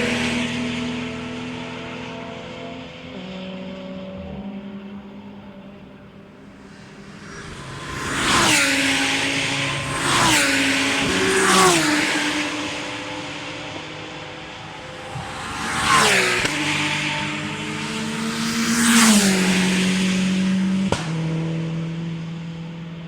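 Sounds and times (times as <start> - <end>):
race cars passing at speed: 0.0 - 23.0.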